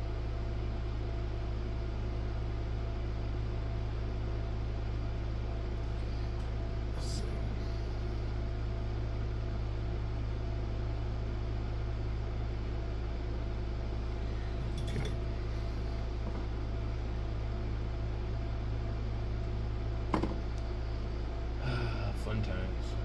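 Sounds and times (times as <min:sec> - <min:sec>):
low hum: 0:13.4 - 0:23.0.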